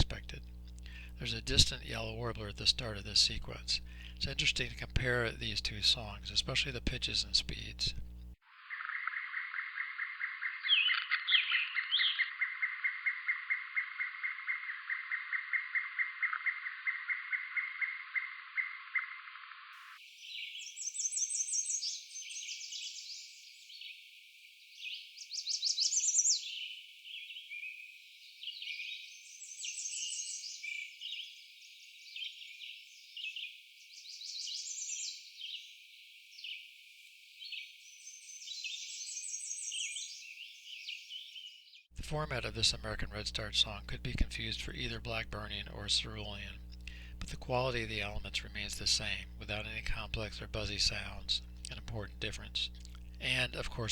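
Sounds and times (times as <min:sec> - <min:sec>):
bird song of quick repeated notes: 0:00.0 - 0:42.0.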